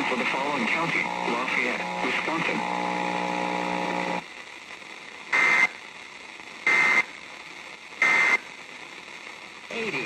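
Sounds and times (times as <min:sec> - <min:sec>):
steady buzzing hum: 0:00.0 - 0:04.6
radio hiss: 0:00.0 - 0:10.0.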